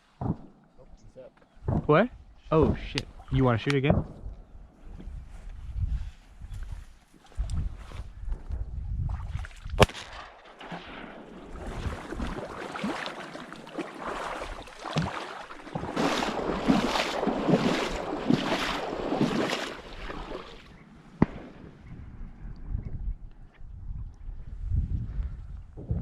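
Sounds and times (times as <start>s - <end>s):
shotgun shot: 0.2s - 0.6s, 3.8s - 4.3s, 9.8s - 11.4s, 21.2s - 21.9s
splashing through shallow water: 9.0s - 20.8s.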